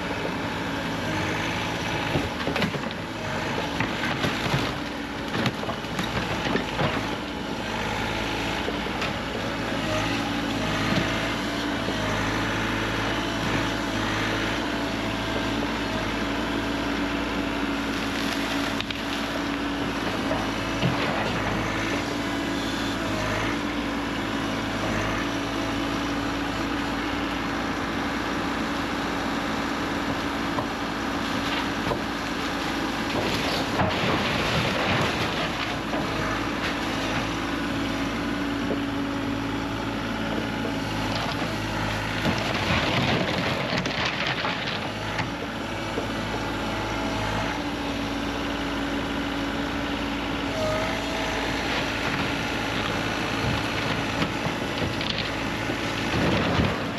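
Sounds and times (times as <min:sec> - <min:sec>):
diesel engine running: 0:00.0 - 0:56.9
debris crashing: 0:31.3 - 0:36.3, 0:42.2 - 0:45.2.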